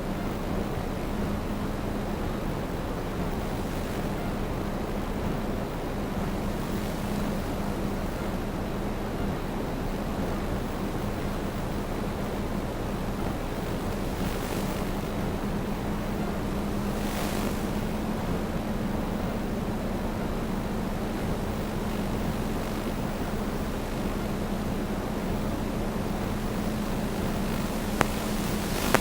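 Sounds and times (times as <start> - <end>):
rush of air noise: 0.0 - 29.0
drone motors buzzing: 21.2 - 29.0.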